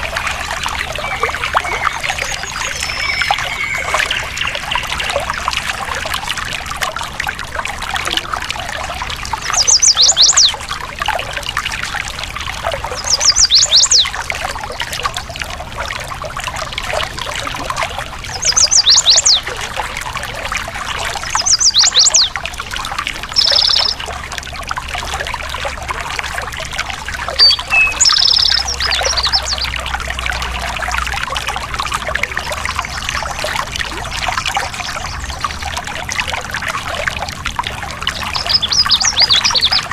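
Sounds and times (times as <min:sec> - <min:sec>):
birds singing whistled notes: 0:00.0 - 0:05.4, 0:09.4 - 0:10.6, 0:13.0 - 0:14.1, 0:18.3 - 0:19.4, 0:21.2 - 0:22.4, 0:23.3 - 0:24.0, 0:27.4 - 0:29.8, 0:38.2 - 0:39.9
stream water trickling: 0:00.0 - 0:39.9.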